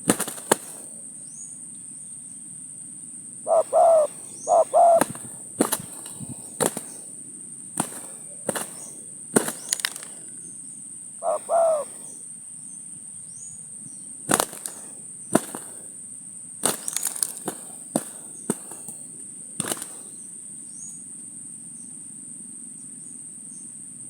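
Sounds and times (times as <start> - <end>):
high insect drone: 0.0 - 24.0
dove cooing: 3.4 - 7.0, 11.2 - 12.2.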